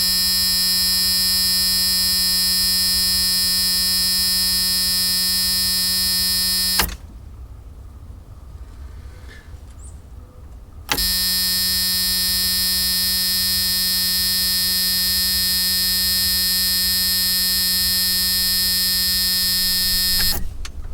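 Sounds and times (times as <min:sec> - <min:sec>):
car warning buzzer: 0:00.0 - 0:07.0, 0:10.9 - 0:20.5.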